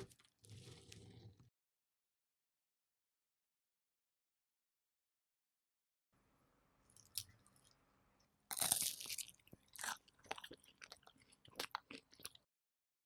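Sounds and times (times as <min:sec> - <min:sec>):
pastry crunching: 0:08.5 - 0:12.4.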